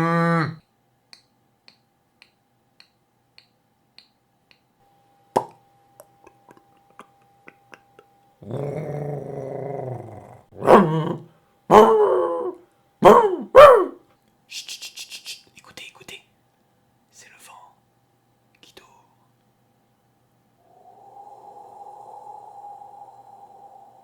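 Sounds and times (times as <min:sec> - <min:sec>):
mouth imitation of cork pop: 0:05.3 - 0:05.6
imitated dog growl: 0:08.4 - 0:13.5.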